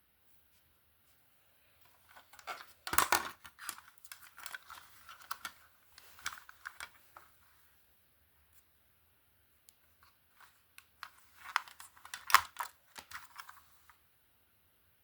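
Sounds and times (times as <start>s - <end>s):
plastic handling clicks and rustling: 1.8s - 7.4s, 9.8s - 14.0s.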